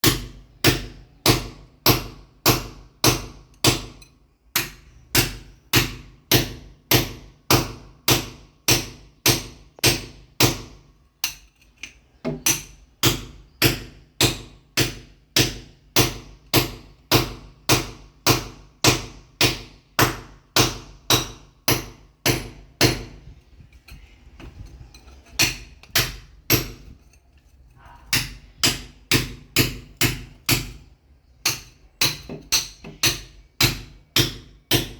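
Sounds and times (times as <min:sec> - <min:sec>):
hammer breaking concrete: 0:00.0 - 0:04.0, 0:28.1 - 0:30.8, 0:31.4 - 0:34.9.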